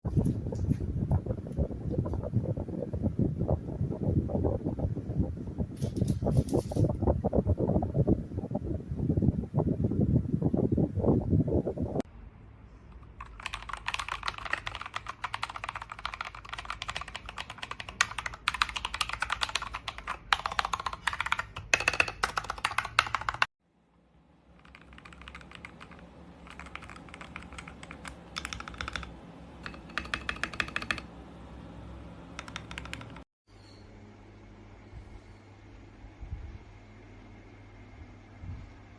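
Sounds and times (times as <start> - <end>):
typing on mechanical keyboard: 13.0 - 23.5, 24.6 - 31.1, 32.4 - 33.2.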